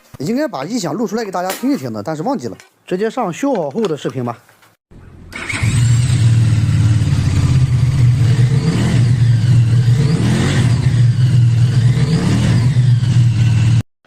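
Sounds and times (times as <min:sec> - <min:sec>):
motorcycle engine running: 0:05.0 - 0:13.8.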